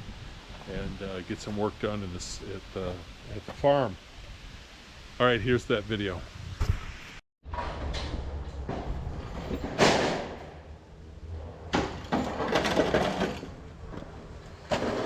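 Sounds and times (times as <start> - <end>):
scaffolding bumps and clatter: 7.5 - 15.0.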